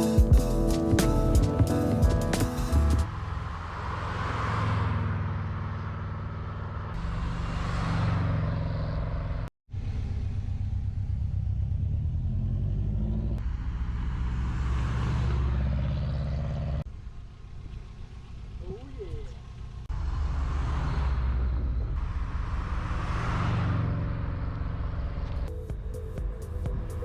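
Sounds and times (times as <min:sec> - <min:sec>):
car engine driving: 0:00.0 - 0:27.0.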